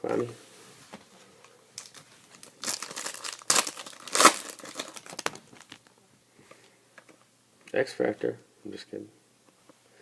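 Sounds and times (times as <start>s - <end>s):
wrapper crinkling and tearing: 1.8s - 5.9s.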